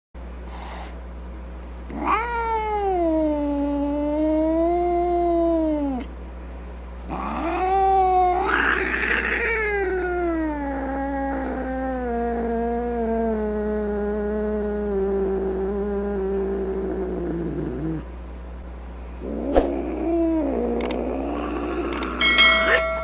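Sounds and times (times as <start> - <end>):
cat yowling angrily: 1.9 - 6.1, 7.1 - 13.9, 19.2 - 23.0.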